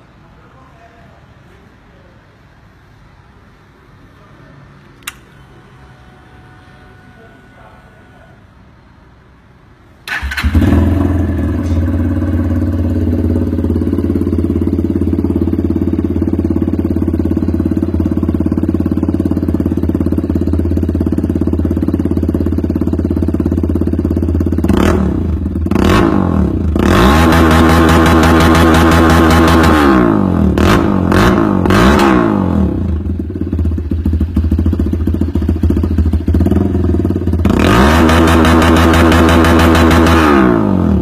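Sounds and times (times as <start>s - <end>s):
motorcycle engine idling: 10.1s - 26.9s, 28.0s - 41.0s
motorcycle engine revving: 10.1s - 41.0s.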